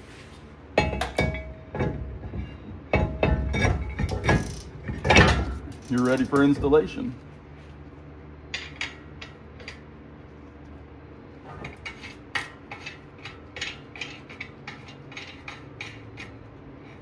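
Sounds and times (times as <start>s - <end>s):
metallic clinks of brake rotor: 0.8s - 7.1s.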